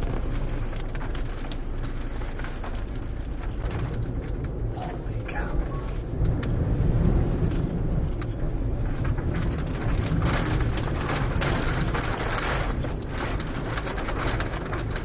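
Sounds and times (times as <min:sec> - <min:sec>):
heavy rain hitting: 0:00.0 - 0:15.0
storm wind buffeting: 0:03.5 - 0:15.0.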